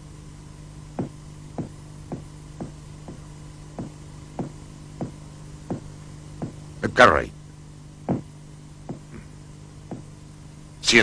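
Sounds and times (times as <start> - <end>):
low steady hum: 0.0 - 11.0
footsteps knocking: 1.0 - 6.6, 8.1 - 9.3, 9.9 - 10.2.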